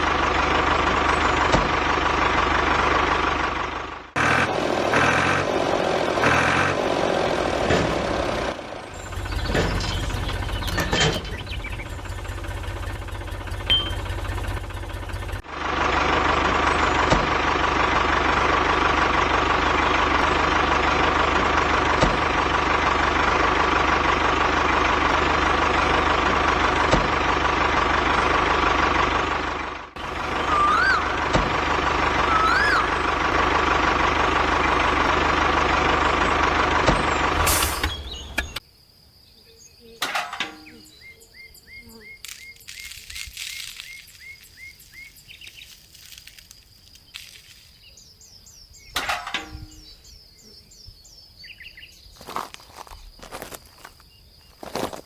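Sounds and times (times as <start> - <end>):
whistle-like tones: 30.4 - 31.1, 32.2 - 33.0.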